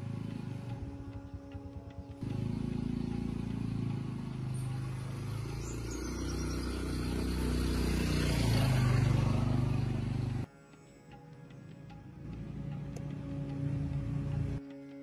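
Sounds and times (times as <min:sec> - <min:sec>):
tractor diesel engine running: 0:00.0 - 0:10.5.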